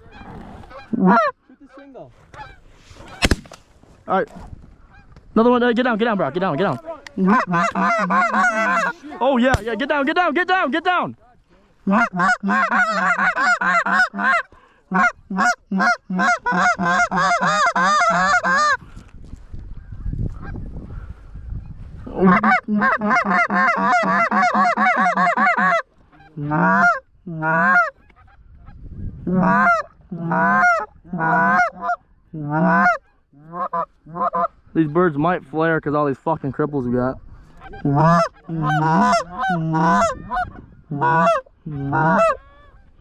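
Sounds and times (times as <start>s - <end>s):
goose honking: 0.0s - 2.6s, 6.4s - 9.3s, 11.8s - 18.8s, 22.1s - 28.4s, 29.3s - 35.0s, 37.5s - 42.9s.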